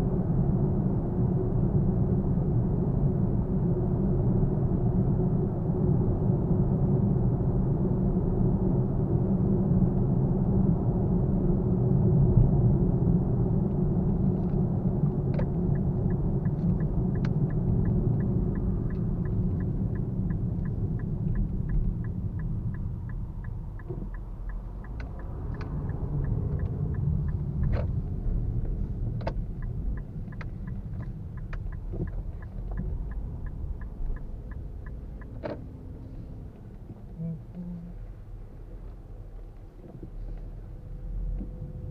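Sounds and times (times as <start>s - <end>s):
in-cabin road and engine rumble: 0.0s - 41.9s
turn signal ticking: 13.5s - 41.9s.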